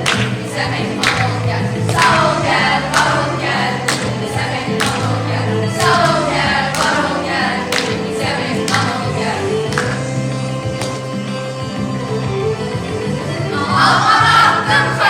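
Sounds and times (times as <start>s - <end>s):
group of voices singing: 0.0s - 10.4s, 13.5s - 15.0s
regular beat: 0.0s - 11.2s.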